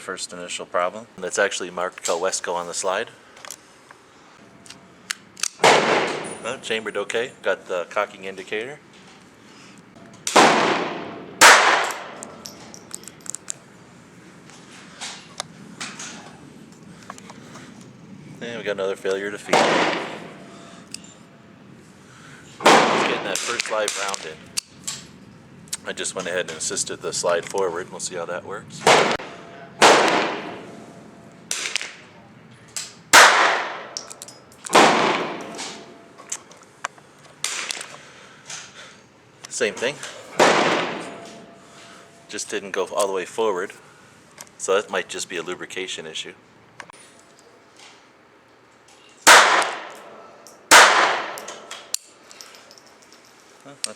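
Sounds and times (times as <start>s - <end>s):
pistol shots with ringing echo: 5.6s - 6.6s, 10.3s - 12.8s, 19.4s - 20.5s, 22.6s - 24.3s, 28.8s - 30.9s, 33.1s - 34.1s, 34.7s - 36.0s, 40.4s - 41.5s, 49.3s - 51.8s.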